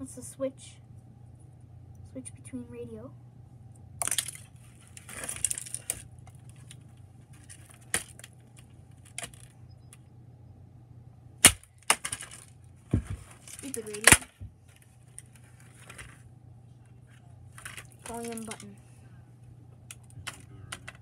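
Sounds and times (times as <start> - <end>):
plastic crackling: 4.0 - 10.0, 11.4 - 16.2, 17.5 - 18.8.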